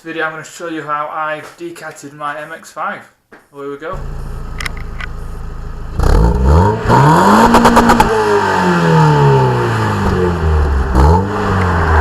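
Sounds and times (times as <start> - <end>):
car engine revving: 4.0 - 12.0.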